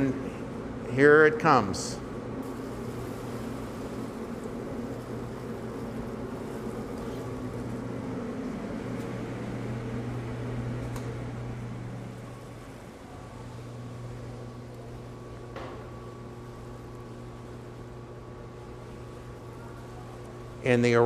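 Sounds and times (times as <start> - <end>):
hydraulic lift machine hum: 0.0 - 21.0.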